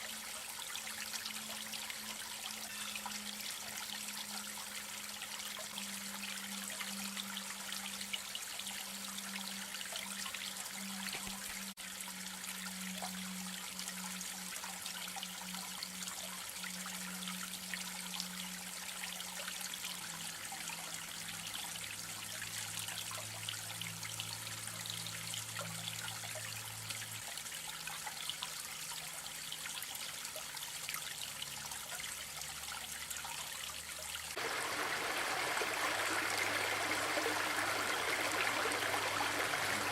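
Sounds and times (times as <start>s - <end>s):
creek water splashing over rocks: 34.3s - 39.9s.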